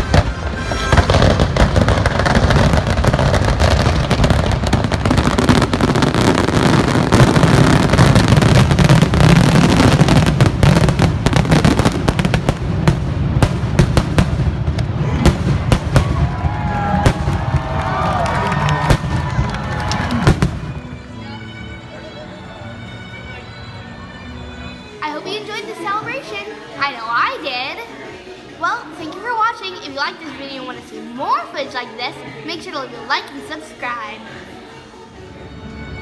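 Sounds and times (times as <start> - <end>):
fireworks bangs and crackling: 0.0 - 20.9.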